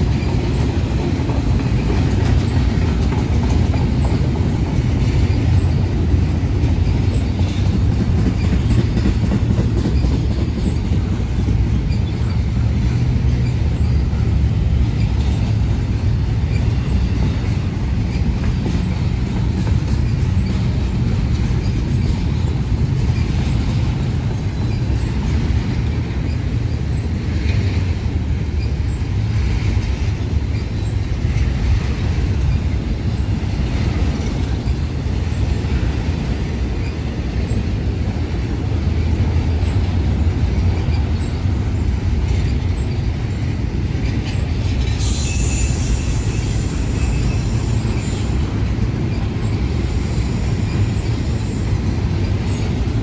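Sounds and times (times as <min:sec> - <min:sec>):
freight train wheels rumbling: 0:00.0 - 0:53.0
high wheel squeal: 0:42.5 - 0:52.8.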